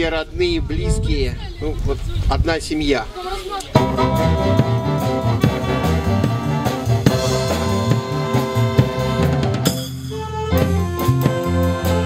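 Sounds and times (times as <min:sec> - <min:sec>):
bass line: 0:03.8 - 0:12.0
drum kit beat: 0:03.8 - 0:12.0
sustained melody notes: 0:03.8 - 0:12.0.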